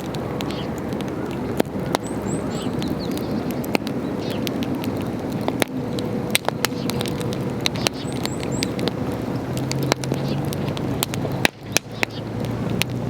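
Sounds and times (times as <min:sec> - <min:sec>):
campfire crackling and popping: 0:00.0 - 0:13.0
low fire rumble: 0:00.0 - 0:13.0.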